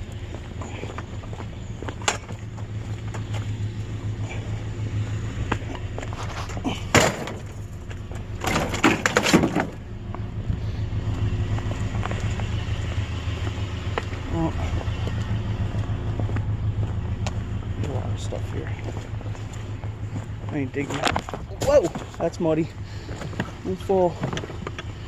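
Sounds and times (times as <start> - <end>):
vehicle engine idling: 0.0 - 25.0.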